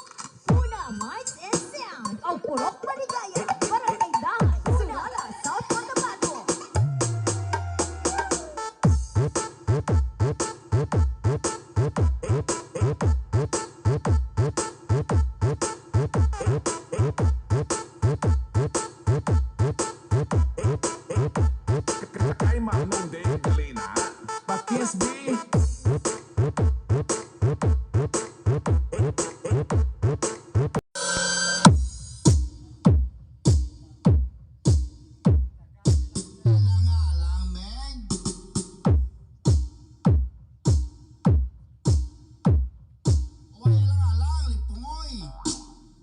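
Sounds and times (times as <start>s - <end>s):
heavy kick drum beat: 0.5s - 1.0s, 3.6s - 24.0s, 25.6s - 30.3s, 31.7s - 36.4s, 38.1s - 43.5s
electronic dance music: 0.5s - 32.6s.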